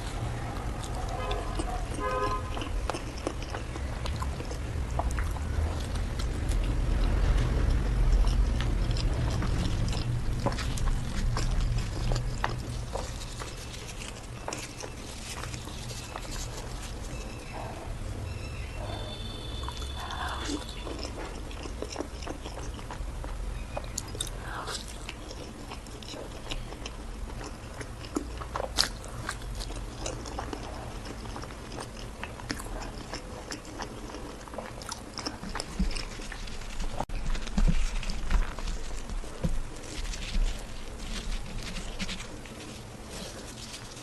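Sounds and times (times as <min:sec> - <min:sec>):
mouth clicks and smacks: 0:00.0 - 0:17.8, 0:19.6 - 0:40.8
chewing and biting flatbread: 0:00.0 - 0:18.0, 0:18.7 - 0:44.0.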